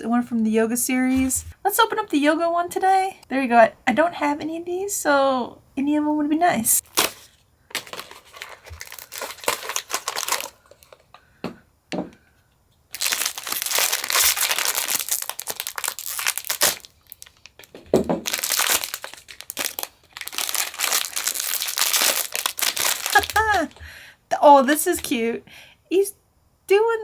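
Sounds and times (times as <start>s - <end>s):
packaging tearing and crinkling: 6.8s - 11.1s, 12.9s - 23.8s.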